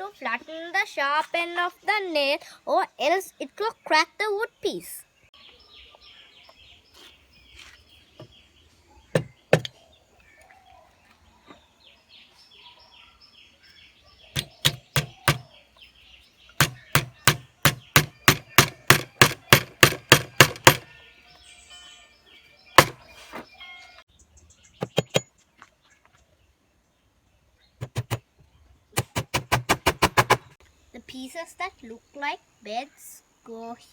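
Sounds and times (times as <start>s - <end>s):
birds chirping: 0.0s - 33.9s
hammer striking nails into wood: 9.2s - 9.7s, 14.4s - 15.5s, 16.6s - 20.8s, 22.8s - 23.0s, 24.8s - 25.3s, 27.8s - 28.2s, 29.0s - 30.6s.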